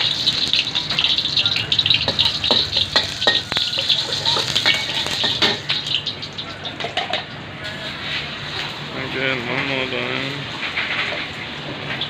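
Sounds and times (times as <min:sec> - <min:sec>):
metal spatula clanking on pan: 0:00.0 - 0:07.4
rice sizzling in a wok: 0:00.0 - 0:09.0.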